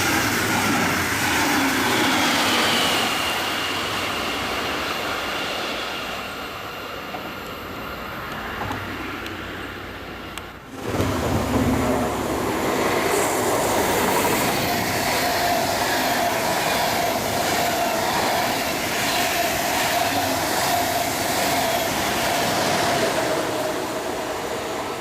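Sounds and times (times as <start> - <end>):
train wheels rolling on rails: 0.0 - 25.0
steady whining tone: 10.3 - 24.6.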